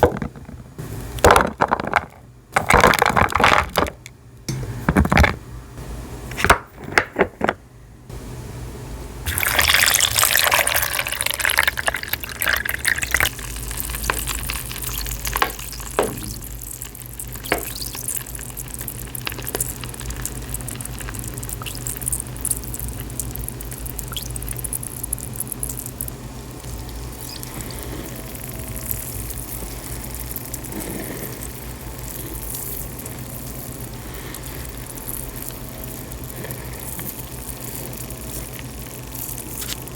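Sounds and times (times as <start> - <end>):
fine fizzing crackle: 9.3 - 39.9
water pouring over dry pieces: 9.3 - 39.9.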